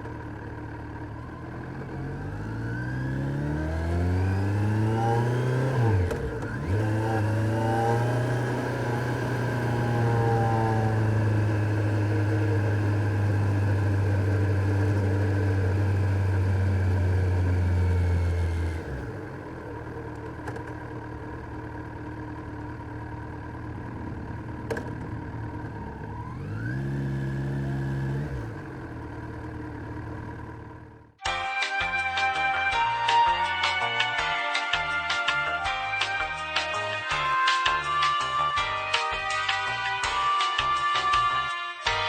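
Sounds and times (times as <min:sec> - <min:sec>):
motorcycle engine running: 0:00.0 - 0:31.2
music: 0:31.2 - 0:42.0.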